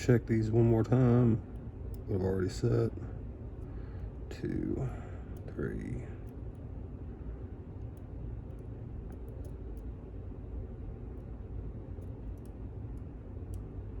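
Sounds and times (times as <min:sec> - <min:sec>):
steady low rumble: 0:00.0 - 0:14.0.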